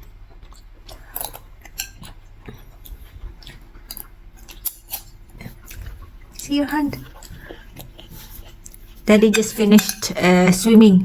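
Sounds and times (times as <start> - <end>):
cutlery clinking on plate: 9.2 - 10.2.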